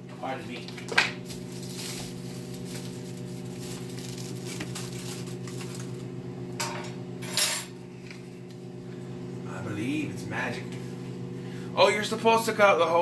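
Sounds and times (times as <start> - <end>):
microwave oven humming: 0.0 - 13.0
tableware clattering: 6.6 - 7.7.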